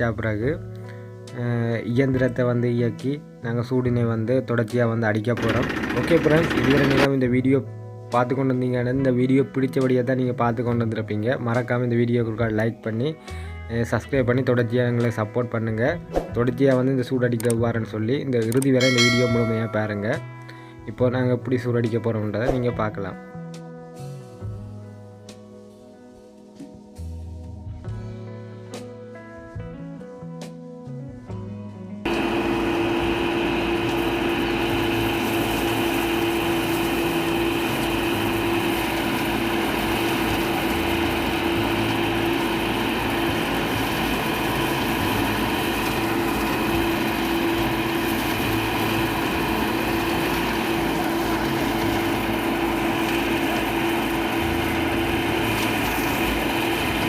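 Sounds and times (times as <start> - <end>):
threshing machine running: 5.4 - 7.1, 32.1 - 57.0.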